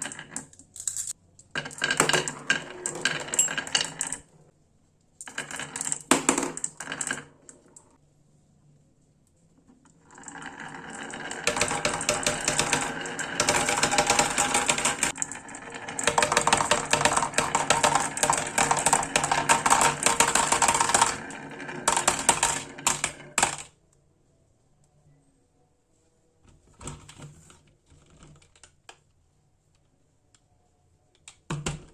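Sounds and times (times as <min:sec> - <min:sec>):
marbles clattering down track: 0:10.1 - 0:23.7.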